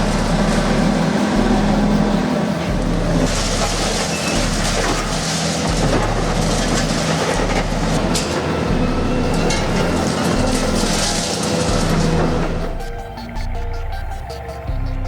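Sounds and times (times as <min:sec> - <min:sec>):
heavy machinery engine hum: 0:00.0 - 0:15.0
clattering and crackling: 0:03.1 - 0:08.7, 0:09.3 - 0:12.7.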